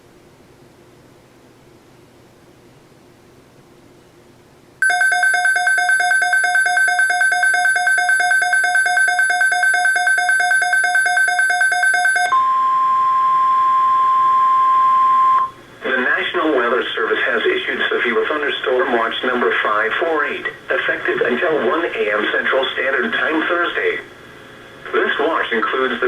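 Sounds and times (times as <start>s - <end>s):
rapidly pulsing multi-pitch beep: 4.8s - 12.8s
steady weather radio alarm tone: 4.8s - 16.0s.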